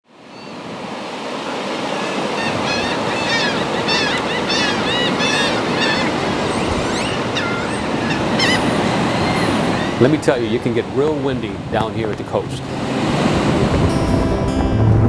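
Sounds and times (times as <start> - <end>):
ocean surf washing: 0.0 - 15.0
birds calling: 0.2 - 11.0.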